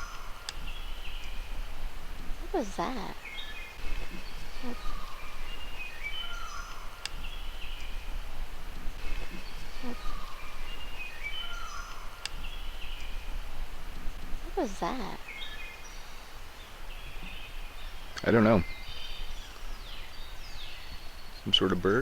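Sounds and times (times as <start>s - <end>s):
animal whistled call: 3.2s - 8.0s, 9.0s - 12.7s.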